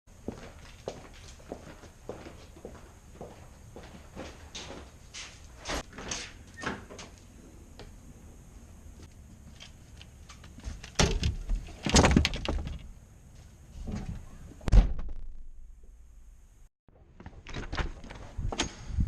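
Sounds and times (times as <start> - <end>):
loud thud: 14.7 - 15.9.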